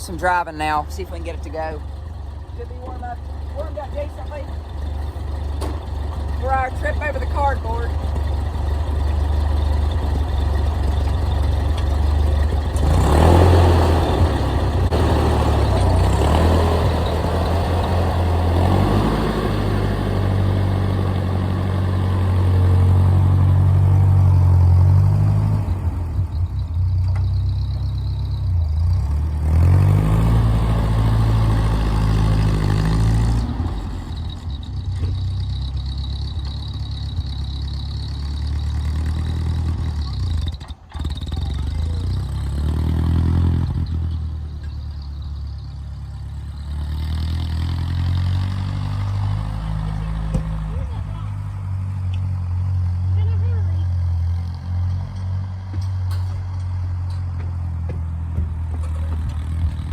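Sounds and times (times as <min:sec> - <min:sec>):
tractor engine running: 0:00.0 - 0:59.9.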